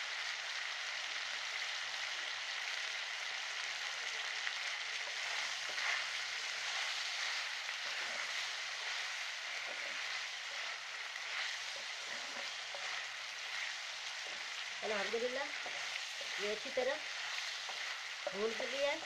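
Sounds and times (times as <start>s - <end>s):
chicken sizzling in a pan: 0.0s - 19.0s.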